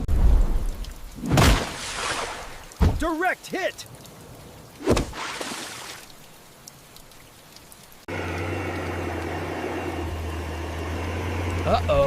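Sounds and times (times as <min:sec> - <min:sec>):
low engine hum: 0:08.1 - 0:12.0.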